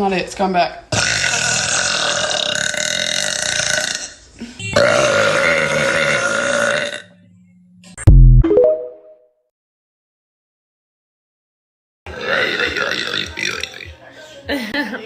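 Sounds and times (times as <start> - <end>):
woman burping: 1.0 - 7.1, 12.1 - 13.8.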